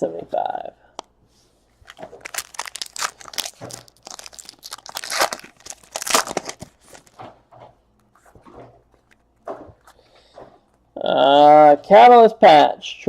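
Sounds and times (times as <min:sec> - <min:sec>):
light handling sounds: 0:01.0 - 0:10.9
card pack wrapper tearing and crinkling: 0:01.8 - 0:07.2.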